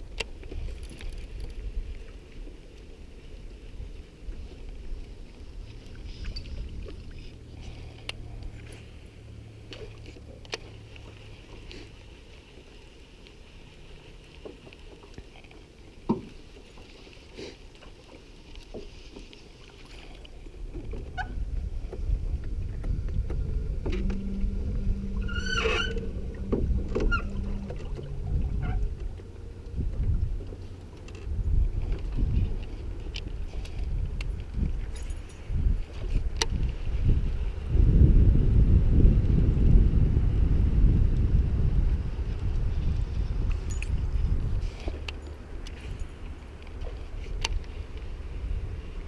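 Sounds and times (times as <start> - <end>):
wind buffeting microphone: 20.5 - 49.0.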